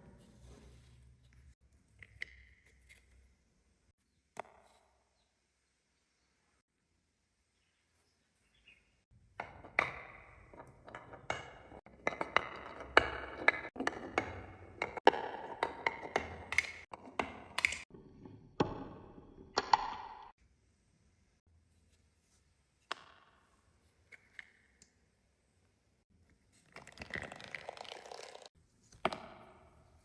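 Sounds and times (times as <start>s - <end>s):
marbles rolling down a track: 26.8s - 28.5s.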